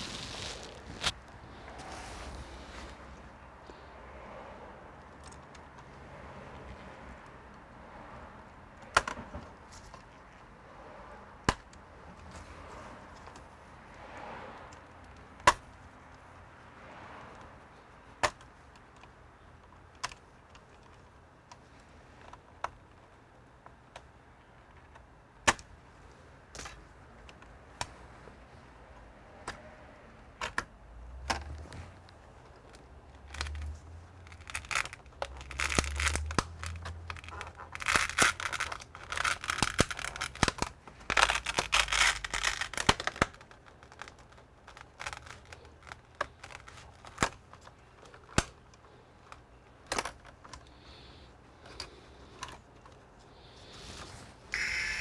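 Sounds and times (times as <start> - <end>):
plastic film crinkling and tearing: 0.0 - 1.6, 33.2 - 47.4
tools and plastic parts clicking: 18.2 - 24.1, 30.4 - 50.7.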